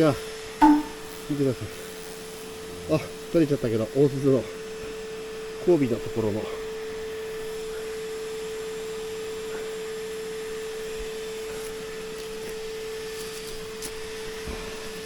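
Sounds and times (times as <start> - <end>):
steady hum: 0.6 - 1.4.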